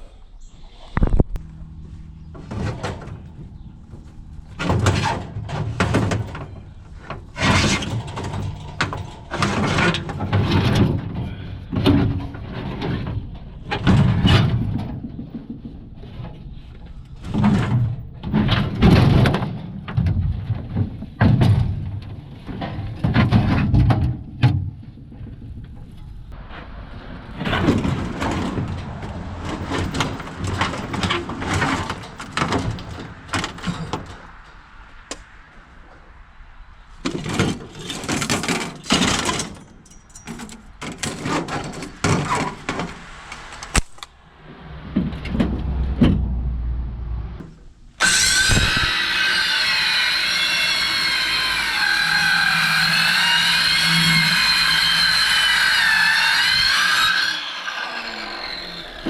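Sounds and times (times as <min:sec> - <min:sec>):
scrap clattering and scraping: 0:01.8 - 0:26.8, 0:27.4 - 0:34.7, 0:37.0 - 0:43.8.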